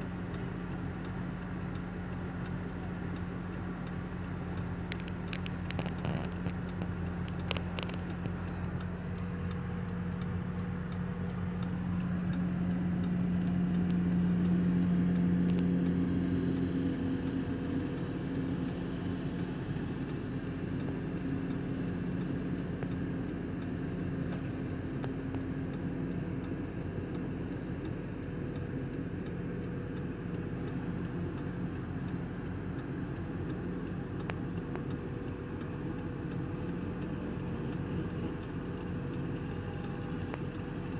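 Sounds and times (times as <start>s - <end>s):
engine humming: 0.0s - 40.9s.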